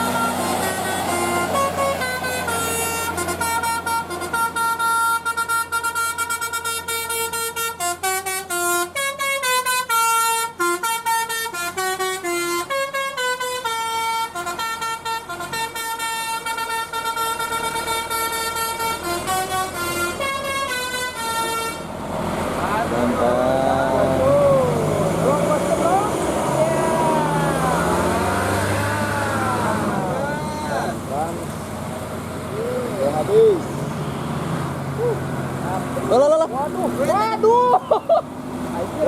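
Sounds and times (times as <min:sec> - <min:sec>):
musical bus air horn melody: 0:00.0 - 0:22.0.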